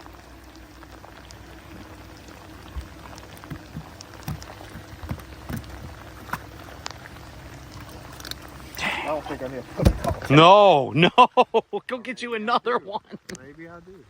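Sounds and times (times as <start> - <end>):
water trickling and splashing: 0.0 - 14.0
small knocks: 2.7 - 6.5.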